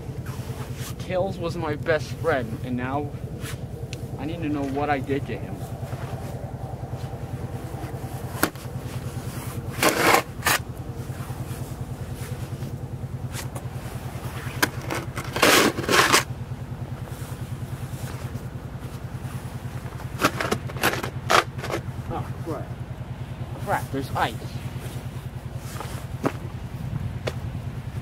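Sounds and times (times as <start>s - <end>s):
motor running with rapid pulse: 0.0s - 28.0s
short scraping bursts: 14.2s - 16.3s.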